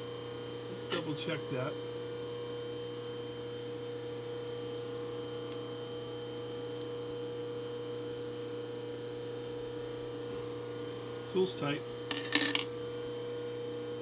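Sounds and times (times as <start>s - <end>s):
shop machinery hum: 0.0s - 1.8s, 9.4s - 12.8s.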